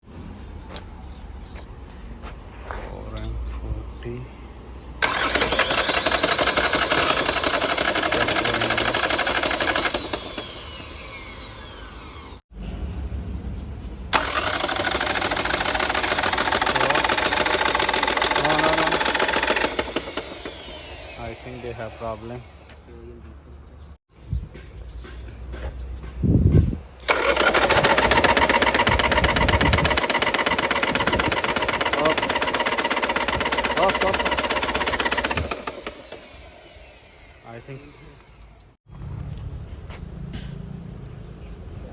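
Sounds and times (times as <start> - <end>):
diesel engine clattering: 5.0 - 10.6, 12.5 - 21.1, 22.1 - 36.3, 38.2 - 41.8
diesel engine cranking: 5.0 - 23.9, 26.8 - 41.8.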